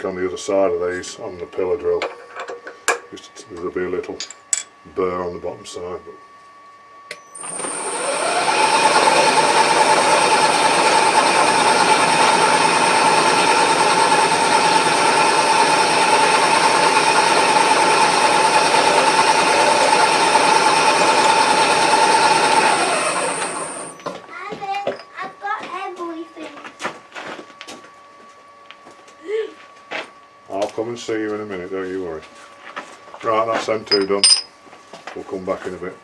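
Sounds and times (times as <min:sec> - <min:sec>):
machine tool motor whining: 0:07.2 - 0:24.2.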